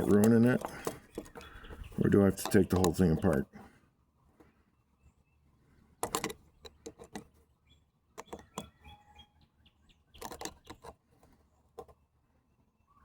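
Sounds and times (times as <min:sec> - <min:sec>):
sharp clicks and knocks: 0:00.0 - 0:03.4, 0:06.0 - 0:07.4, 0:08.2 - 0:08.8, 0:10.1 - 0:11.0
bird chirps: 0:00.7 - 0:03.4, 0:07.6 - 0:10.9, 0:12.6 - 0:13.0.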